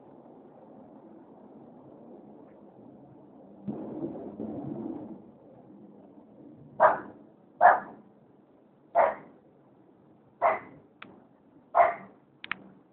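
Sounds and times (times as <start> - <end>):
dog barking: 6.8 - 8.0, 9.0 - 9.3, 10.4 - 10.8, 11.8 - 12.2.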